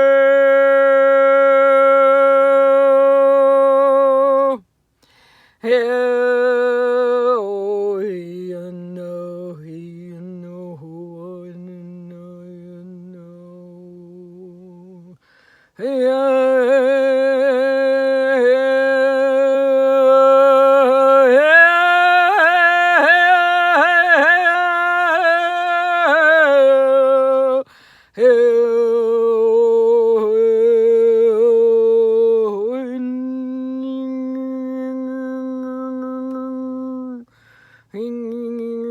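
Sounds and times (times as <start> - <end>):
woman breathing: 5.0 - 5.6, 15.2 - 15.8, 27.6 - 28.2, 37.3 - 37.9.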